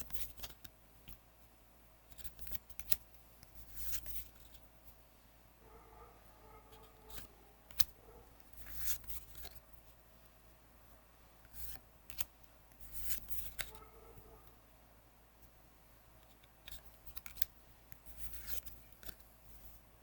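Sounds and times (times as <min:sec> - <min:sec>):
cards sliding swishes: 0:06.7 - 0:09.6, 0:11.5 - 0:13.8.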